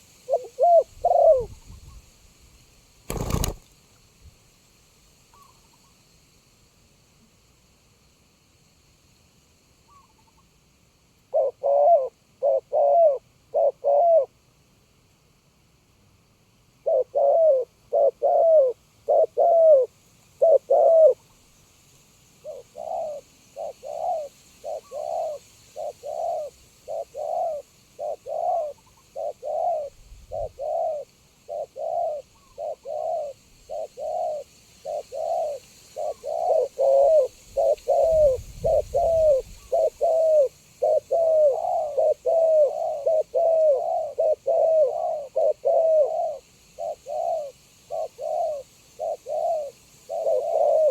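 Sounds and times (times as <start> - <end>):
doves cooing: 0.0 - 1.8, 3.1 - 3.6, 11.3 - 14.3, 16.8 - 21.2, 22.4 - 50.9.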